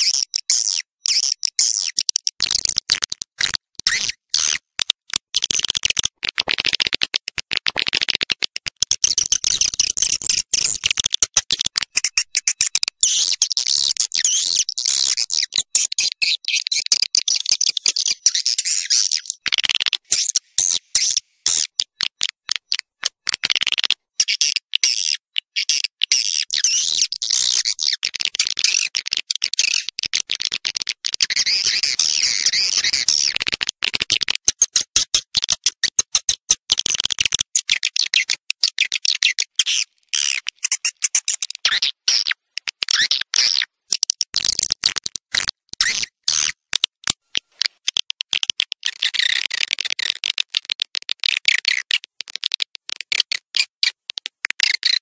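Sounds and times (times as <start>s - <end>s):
swiftlets twittering and chirping: 17.3s - 22.0s, 31.2s - 33.4s.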